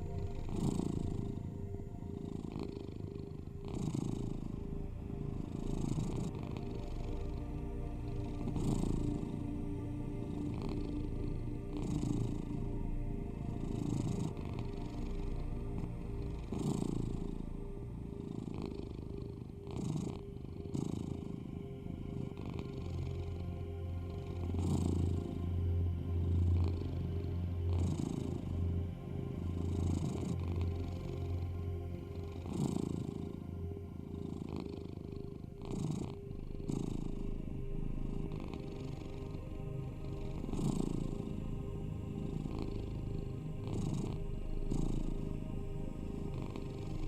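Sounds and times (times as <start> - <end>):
low steady binaural tones: 0.0 - 3.6, 36.2 - 47.0
steady low drone: 0.0 - 19.6, 20.2 - 47.0
cat purring: 0.0 - 47.0.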